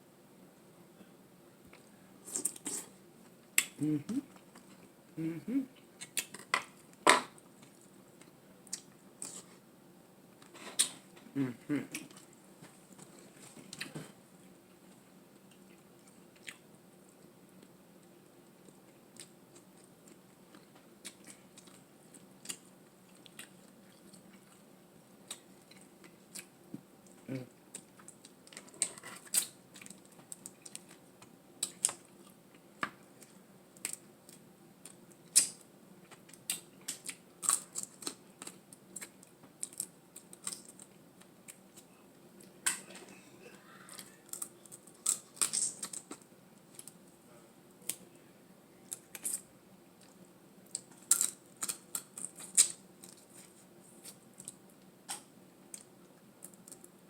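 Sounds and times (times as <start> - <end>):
eating sounds: 3.6 - 6.4, 10.8 - 12.4.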